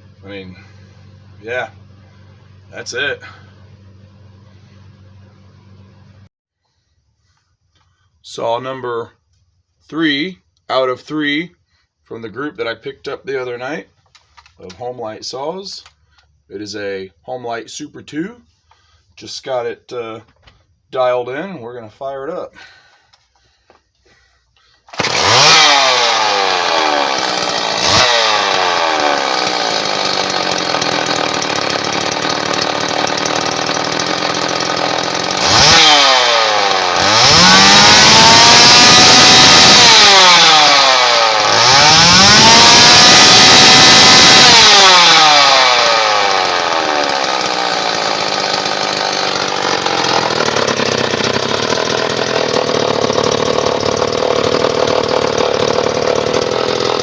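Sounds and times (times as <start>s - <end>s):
chainsaw revving and idling: 24.9s - 57.0s.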